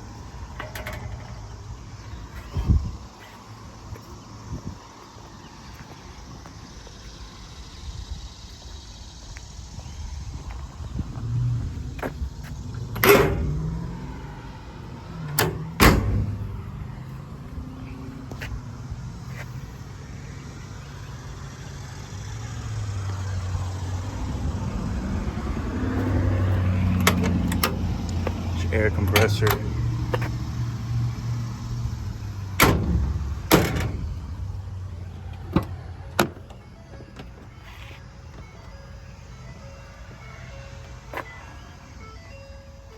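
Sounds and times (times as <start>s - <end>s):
truck engine idling: 0.0s - 42.9s
truck doors banging shut: 0.4s - 1.7s, 12.0s - 14.1s, 15.2s - 16.8s, 26.8s - 30.4s, 31.1s - 38.5s
loud clunks: 12.9s - 13.6s, 15.3s - 16.6s, 32.6s - 34.2s.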